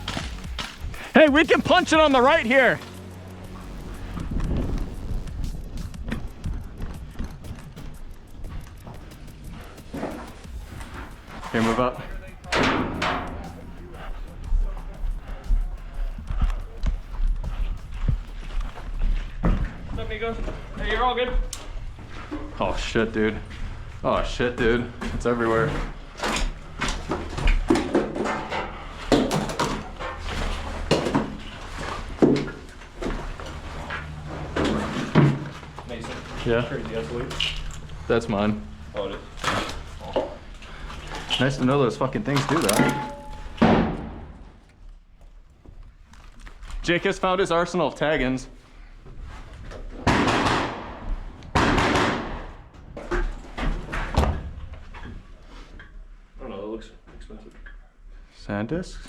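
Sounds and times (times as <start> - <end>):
gear clattering: 0.0 - 43.6
low rumble: 2.4 - 42.2.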